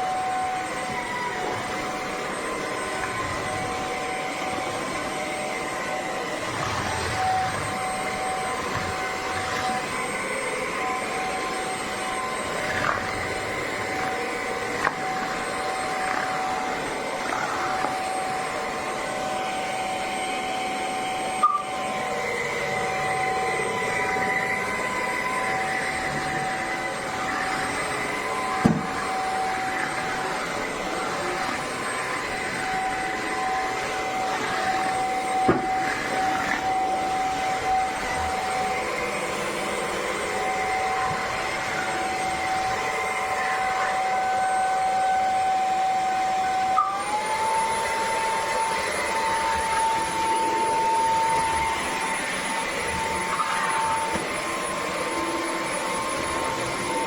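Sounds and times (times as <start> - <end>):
floor cleaner whining: 0.0 - 57.0.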